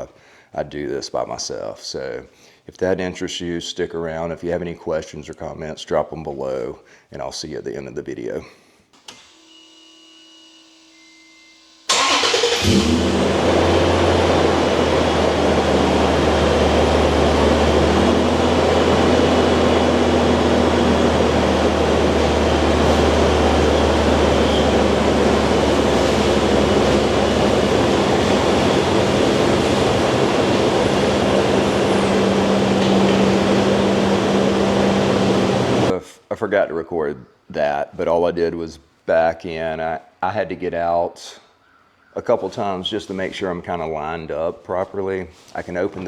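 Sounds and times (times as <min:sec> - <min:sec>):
car engine running: 0:11.9 - 0:35.9.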